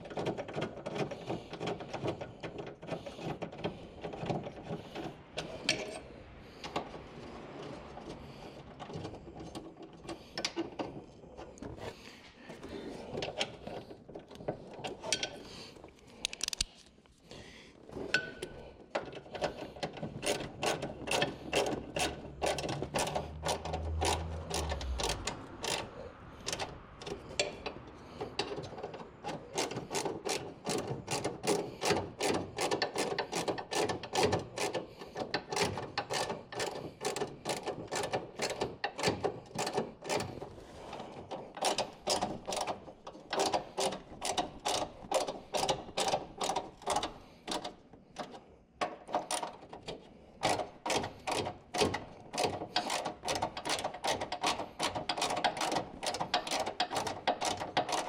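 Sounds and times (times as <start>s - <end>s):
socket ratchet clicking: 20.2s - 25.9s
low hum: 22.7s - 28.4s.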